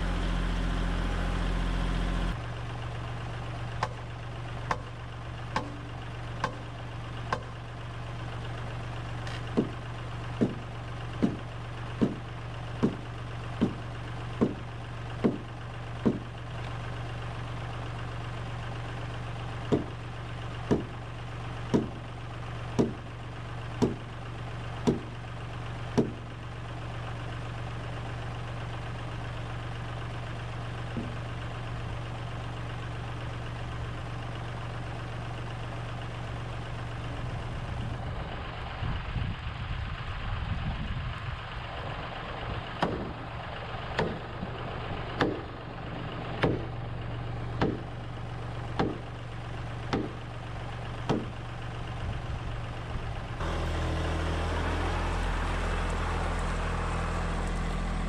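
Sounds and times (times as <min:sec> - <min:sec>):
steady engine-like hum: 0:00.0 - 0:58.0
hand tool striking timber: 0:03.8 - 0:04.0, 0:04.7 - 0:05.0, 0:05.6 - 0:06.7, 0:07.3 - 0:07.6, 0:09.3 - 0:09.8, 0:10.4 - 0:10.6, 0:11.2 - 0:11.4, 0:12.0 - 0:13.0, 0:13.6 - 0:13.8, 0:14.4 - 0:14.6, 0:15.2 - 0:16.3, 0:19.7 - 0:20.0, 0:20.7 - 0:20.9, 0:21.7 - 0:22.0, 0:22.8 - 0:23.0, 0:23.8 - 0:24.0, 0:24.8 - 0:25.1, 0:26.0 - 0:26.2, 0:31.0 - 0:31.2, 0:42.8 - 0:43.1, 0:44.0 - 0:44.2, 0:45.2 - 0:45.4, 0:46.4 - 0:46.7, 0:47.6 - 0:47.9, 0:48.8 - 0:49.0, 0:49.9 - 0:50.2, 0:51.1 - 0:51.4.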